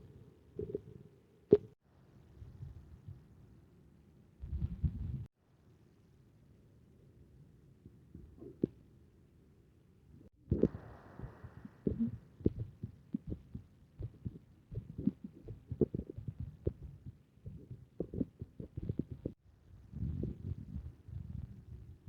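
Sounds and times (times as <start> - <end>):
heartbeat: 4.4 - 5.3, 10.5 - 22.0
muffled breathing through stethoscope: 10.5 - 19.4.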